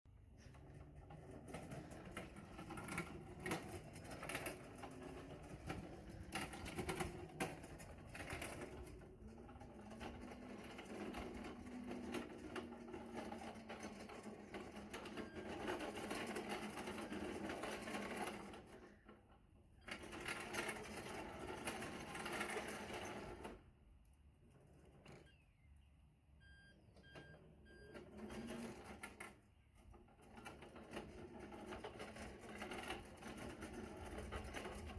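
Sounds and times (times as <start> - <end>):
lawnmower electric motor buzzing: 0.7 - 19.0, 27.5 - 34.9.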